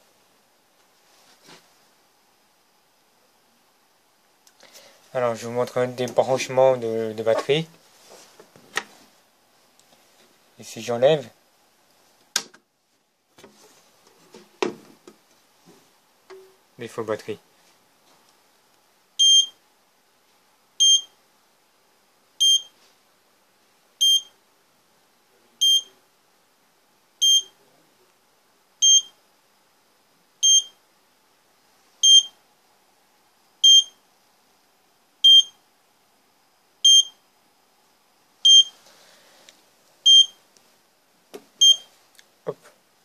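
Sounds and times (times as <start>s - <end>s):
high-pitched buzzer beeps: 19.2s - 19.6s, 20.8s - 21.1s, 22.4s - 22.7s, 24.0s - 24.3s, 25.6s - 25.9s, 28.8s - 29.2s, 30.4s - 30.8s, 32.0s - 32.4s, 35.2s - 35.6s, 36.8s - 37.2s, 38.5s - 38.8s, 40.1s - 40.4s, 41.6s - 41.9s.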